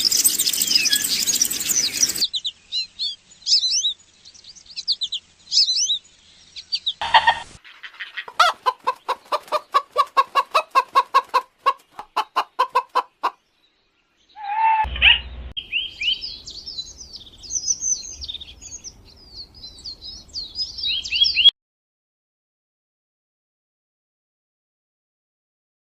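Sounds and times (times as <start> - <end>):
rapid repeated bird calls: 0.0 - 4.0, 4.6 - 13.5
high bird chirping: 0.0 - 9.8, 14.2 - 21.5
loud bird call: 14.3 - 16.5.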